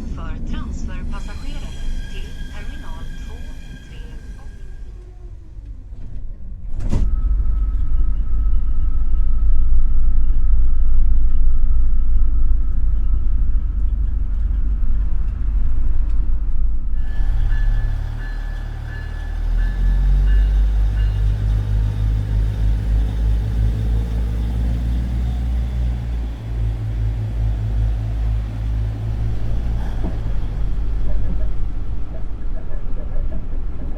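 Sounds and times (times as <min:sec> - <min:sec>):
electric train rumbling: 0:00.0 - 0:33.9
diesel engine throbbing: 0:17.0 - 0:33.9.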